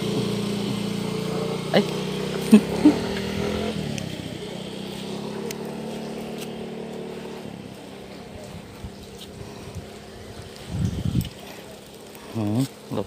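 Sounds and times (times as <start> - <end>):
small engine humming: 0.0 - 13.0.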